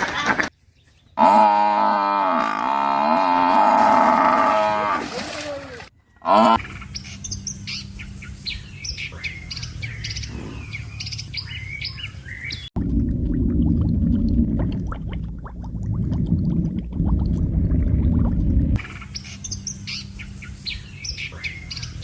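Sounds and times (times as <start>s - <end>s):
small birds chirping: 6.0s - 12.8s, 18.8s - 22.0s
low rumble: 12.8s - 20.4s.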